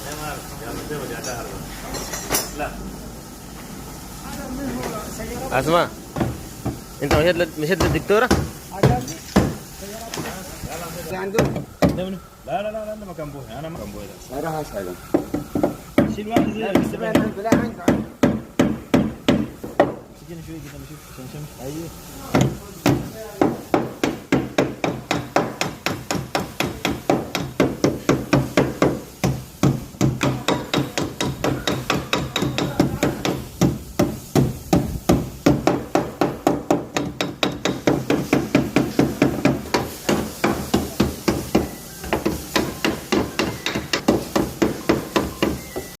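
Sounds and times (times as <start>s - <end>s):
hammer on sheet metal: 15.2s - 20.0s, 22.3s - 45.9s.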